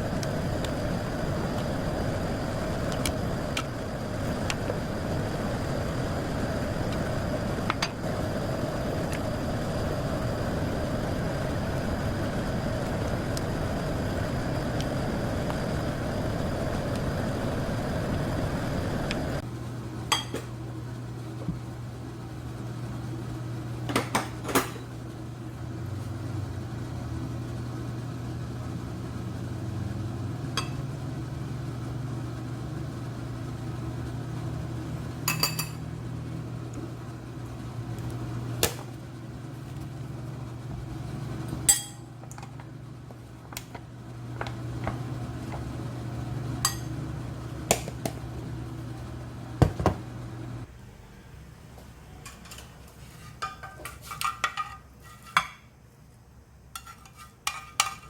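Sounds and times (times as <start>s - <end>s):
low appliance hum: 0.0s - 58.0s
dishes and utensils clinking: 52.2s - 55.7s, 56.8s - 58.0s.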